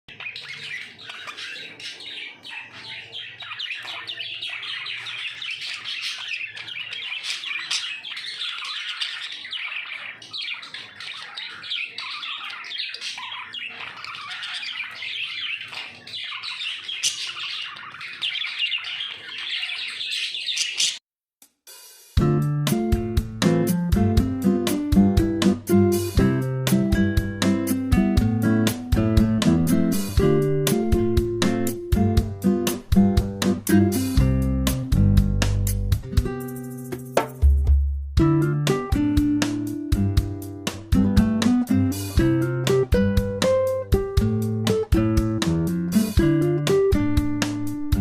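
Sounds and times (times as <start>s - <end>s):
budgies chattering: 0.1s - 21.0s
strummed guitar music: 22.2s - 37.5s, 38.2s - 48.0s.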